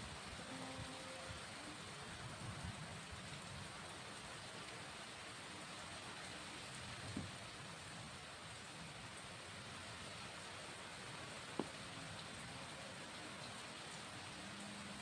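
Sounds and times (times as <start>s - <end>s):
steady rain falling: 0.0s - 15.0s
dull thump: 11.6s - 11.8s.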